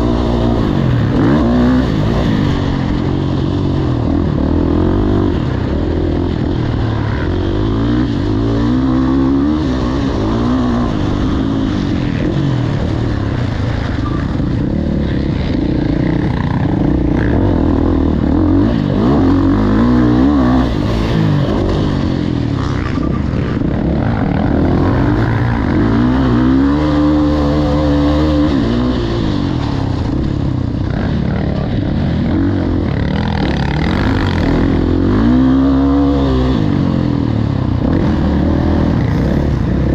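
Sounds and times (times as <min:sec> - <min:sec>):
motocross bike engine revving: 0:00.0 - 0:39.9.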